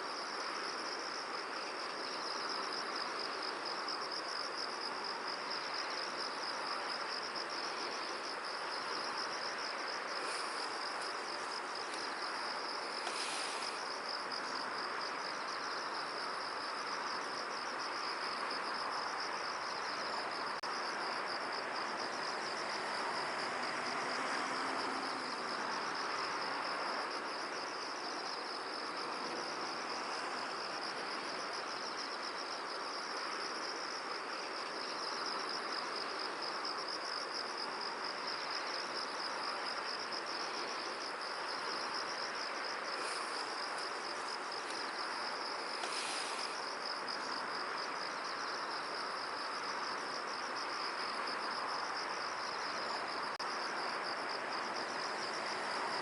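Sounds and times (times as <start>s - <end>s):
wind hiss: 0.0s - 56.0s.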